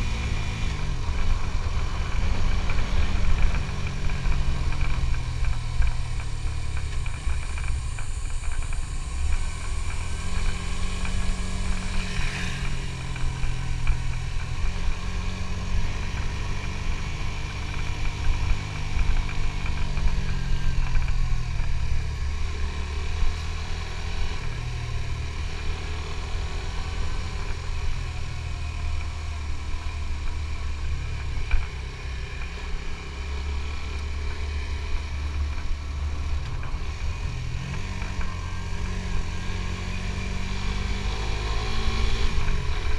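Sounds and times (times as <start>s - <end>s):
low rumble: 0.0s - 25.7s
motorcycle engine running: 0.0s - 42.9s.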